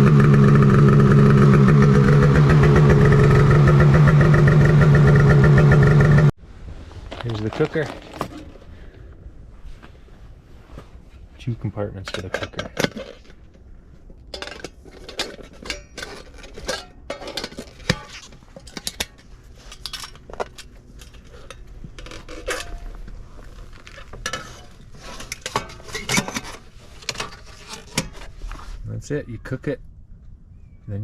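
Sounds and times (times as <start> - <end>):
metal clinks and clanks: 12.0 - 13.5, 14.2 - 28.3.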